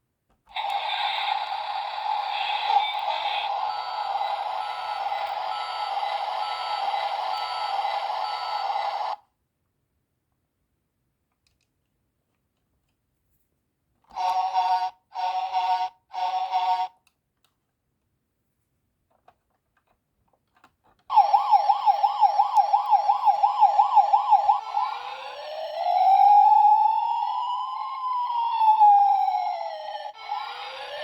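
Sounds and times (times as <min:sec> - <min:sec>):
electronic siren warbling: 0:21.1 - 0:31.0.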